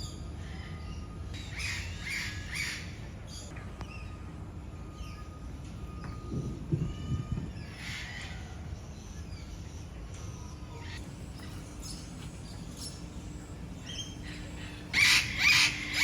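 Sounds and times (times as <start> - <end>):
birds chirping: 0.0 - 16.0
bird harsh repeated calls: 10.8 - 16.0.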